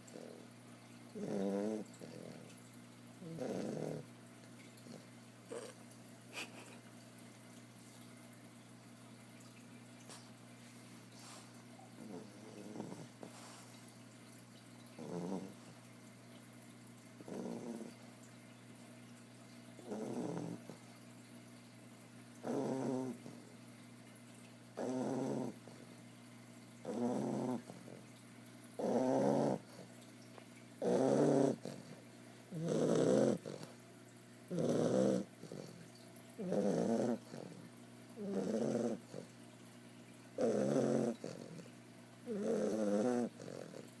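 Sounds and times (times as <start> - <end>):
puppy snoring: 0.0 - 0.5, 1.1 - 2.6, 3.2 - 4.1, 4.8 - 5.8, 11.2 - 13.7, 15.0 - 15.7, 17.2 - 18.0, 19.8 - 20.8, 22.4 - 23.5, 24.8 - 25.9, 26.8 - 28.1, 28.8 - 29.9, 30.8 - 33.8, 34.5 - 39.3, 40.4 - 44.0.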